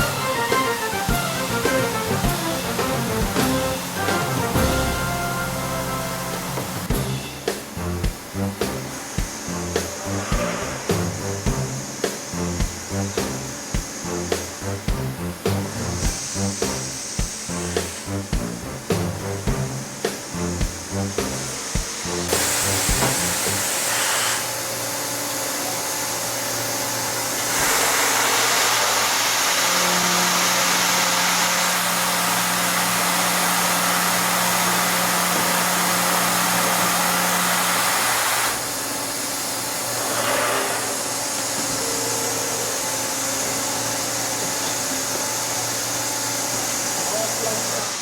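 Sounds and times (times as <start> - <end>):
steady hum: 0.0 - 23.9
gear hobbing machine running: 0.0 - 48.0.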